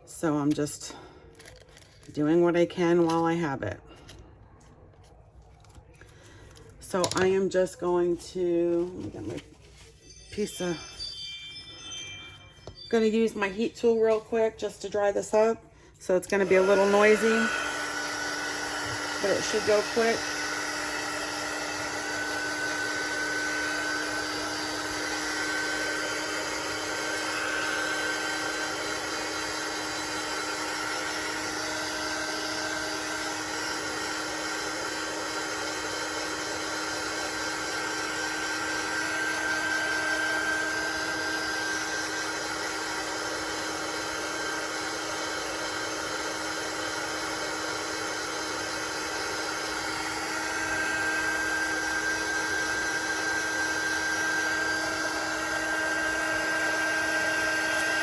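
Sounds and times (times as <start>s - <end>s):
heat gun fan whine and air rush: 16.4s - 58.0s.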